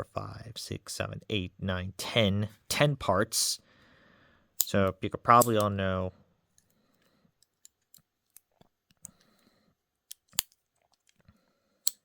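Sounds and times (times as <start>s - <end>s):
pocket knife tools clicking: 5.4s - 5.7s.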